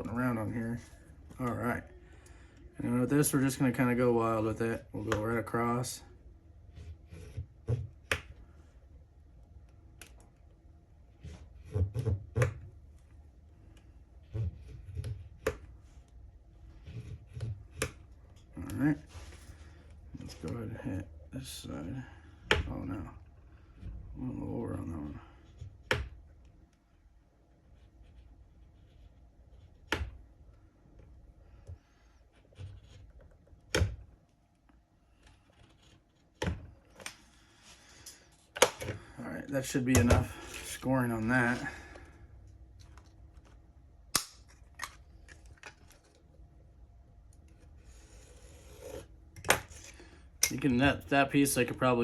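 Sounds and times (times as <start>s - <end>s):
scoring tool scratching sheet: 27.6s - 29.8s.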